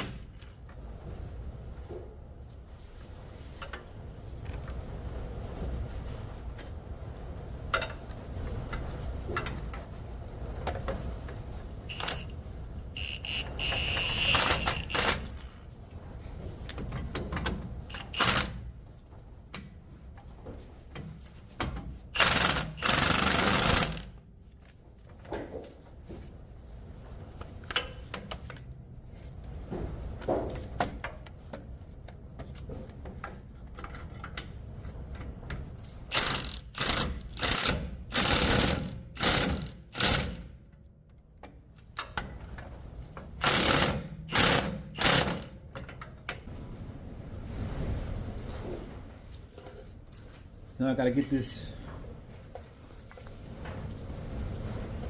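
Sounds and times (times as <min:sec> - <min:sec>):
loud burst of noise: 0:11.7 - 0:15.5.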